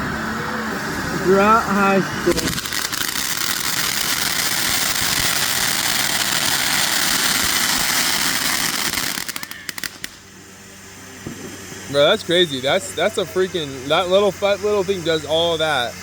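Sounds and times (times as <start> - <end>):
firework hissing crackle: 0.0 - 16.0
firework pops: 2.3 - 10.2, 11.2 - 11.6.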